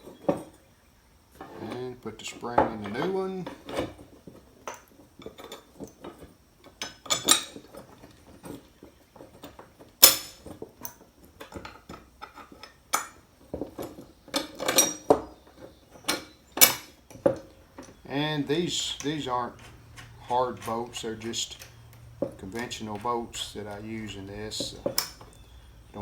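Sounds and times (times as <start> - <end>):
metallic clinks and taps: 16.0 - 26.0.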